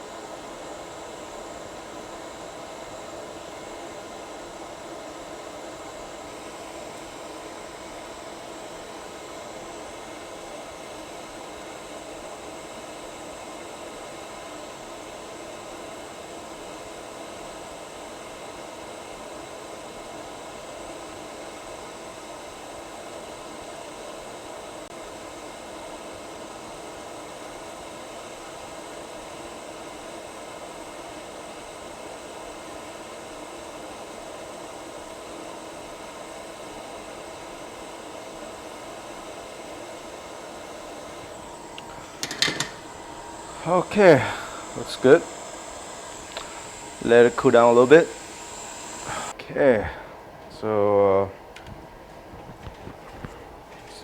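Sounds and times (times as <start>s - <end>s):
electric fan hissing: 0.0s - 54.0s
faint steady hum: 19.0s - 54.0s.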